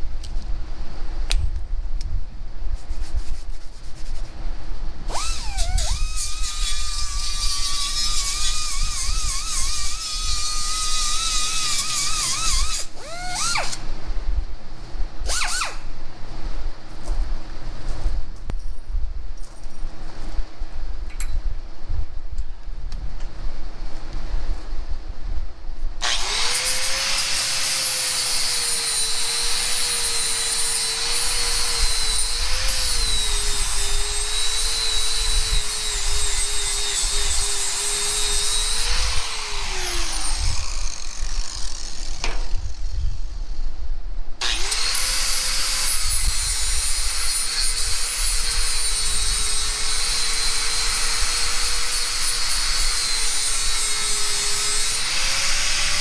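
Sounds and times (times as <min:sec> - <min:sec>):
electric power tool whining: 0:05.1 - 0:13.9, 0:26.0 - 0:43.4, 0:44.4 - 0:56.0.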